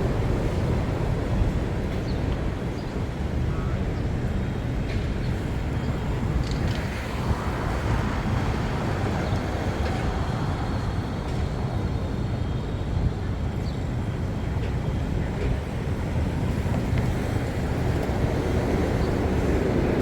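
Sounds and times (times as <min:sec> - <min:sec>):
steady traffic noise: 0:00.0 - 0:20.0
passing vehicles rumbling: 0:04.6 - 0:12.9.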